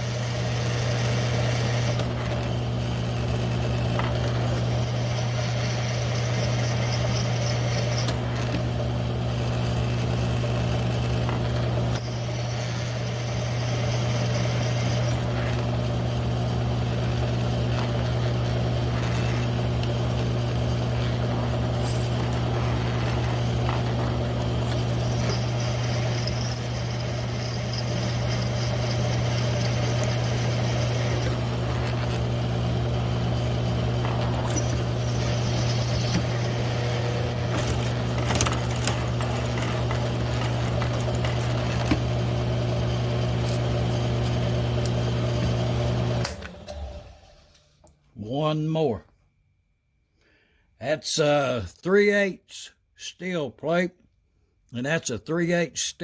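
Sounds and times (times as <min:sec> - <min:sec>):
hole saw scraping through steel: 0:00.0 - 0:02.3, 0:04.0 - 0:08.7, 0:11.9 - 0:15.8, 0:17.1 - 0:45.6
drill motor hum: 0:00.0 - 0:47.6.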